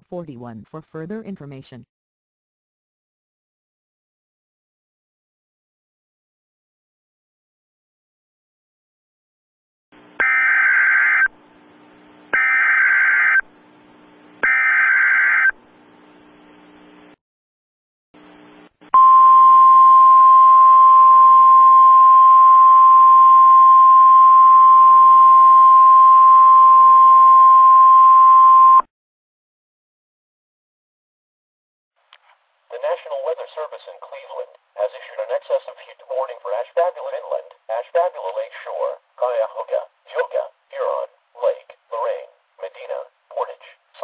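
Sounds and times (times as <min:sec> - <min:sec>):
buzzy digital data bursts: 0:12.4 - 0:13.4, 0:14.4 - 0:15.5.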